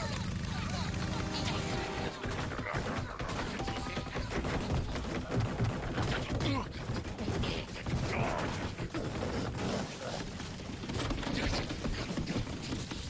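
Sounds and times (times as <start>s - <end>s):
squeaky voice-like sounds: 1.4s - 5.0s
clatter of clicks and knocks: 2.1s - 13.0s.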